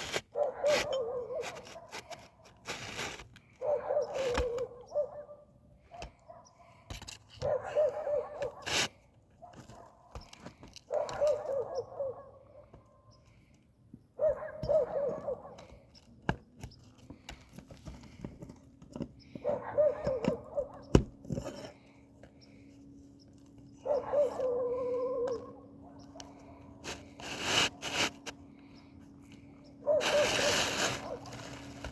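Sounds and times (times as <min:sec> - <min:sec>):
tool knocking and scraping shingles: 0:00.0 - 0:03.4, 0:08.4 - 0:08.9, 0:14.6 - 0:21.9, 0:26.8 - 0:28.4.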